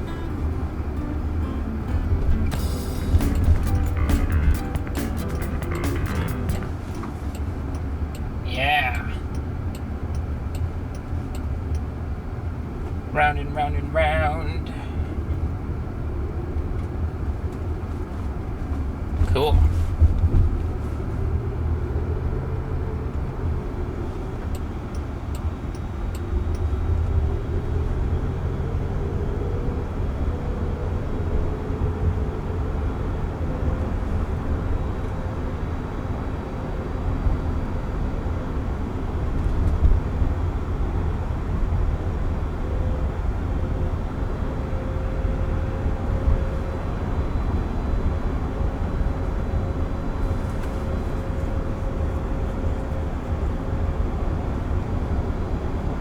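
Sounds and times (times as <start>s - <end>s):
road and tyre rumble: 0.0s - 56.0s
clicks: 2.4s - 8.3s.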